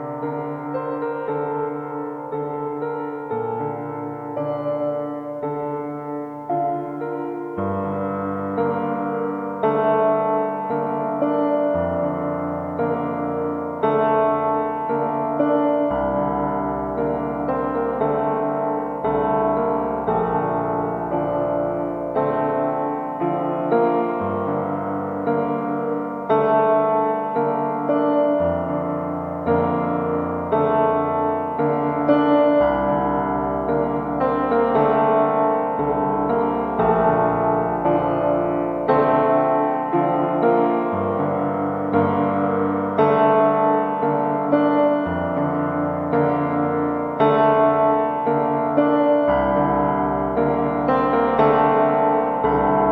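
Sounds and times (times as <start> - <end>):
slow piano piece: 0.0 - 52.9.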